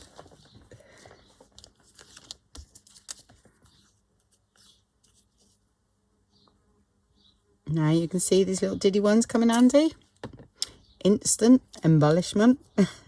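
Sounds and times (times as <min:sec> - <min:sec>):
paper rustling and light taps: 0:00.0 - 0:05.6.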